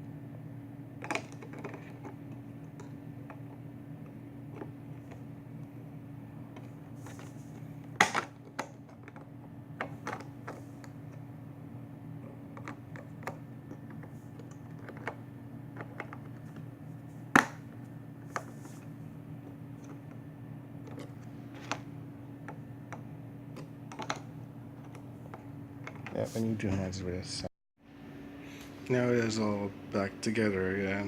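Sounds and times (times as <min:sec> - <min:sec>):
plastic parts clicking and tapping: 0:07.9 - 0:10.9, 0:12.5 - 0:15.2, 0:15.8 - 0:16.6, 0:23.6 - 0:24.2.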